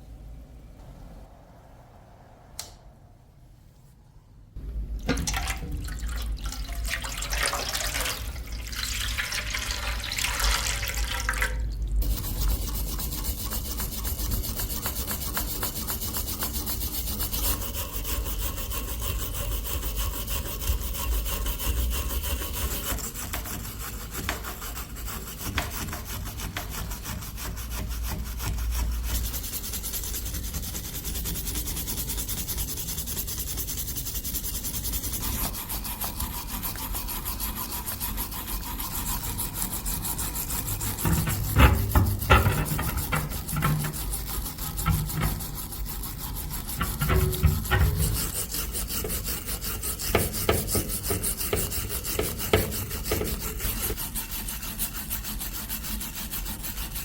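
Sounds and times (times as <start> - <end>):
abrasive rubbing on rusty steel: 12.0 - 57.0.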